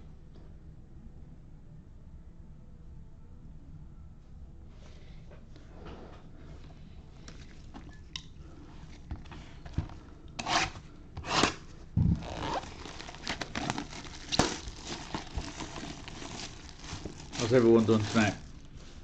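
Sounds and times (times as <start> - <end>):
packaging rustling: 8.8 - 19.0
packaging tearing: 10.4 - 18.6.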